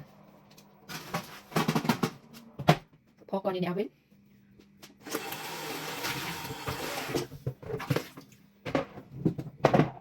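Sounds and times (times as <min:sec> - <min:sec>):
kitchen tap running: 0:05.0 - 0:07.3
kitchenware knocks and clatters: 0:07.3 - 0:10.0.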